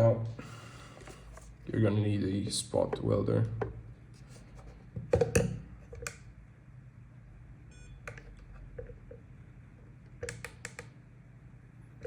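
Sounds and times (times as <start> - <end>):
short electronic beep: 7.7 - 8.0.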